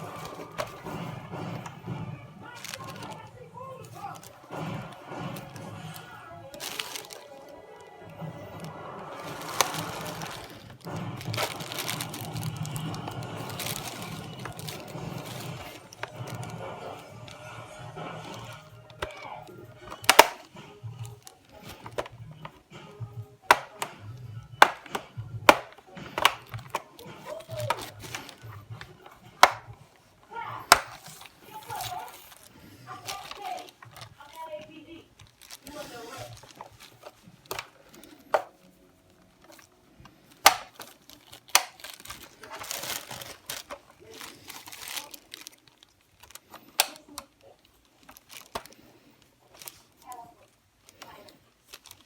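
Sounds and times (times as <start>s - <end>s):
background music: 0.0s - 43.7s
plastic case clicks and knocks: 19.9s - 20.5s, 23.5s - 23.9s, 24.6s - 26.9s, 27.5s - 29.8s
plastic clicks and knocks: 19.9s - 22.6s, 23.5s - 24.0s, 24.6s - 29.8s, 39.4s - 43.8s.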